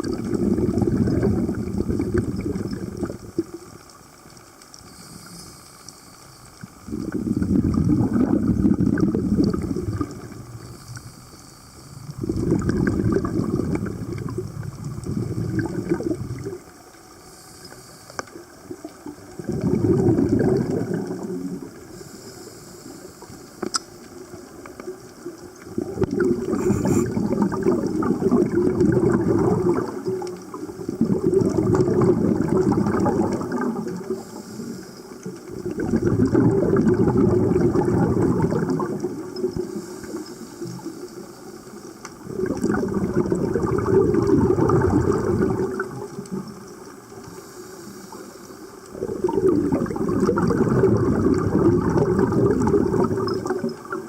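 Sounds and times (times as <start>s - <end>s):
underwater breath bubbles: 0.0s - 3.8s, 4.8s - 54.0s.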